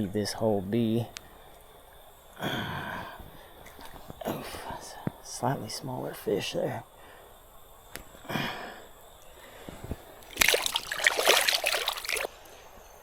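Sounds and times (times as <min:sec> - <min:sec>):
water splashing: 0:10.2 - 0:12.3.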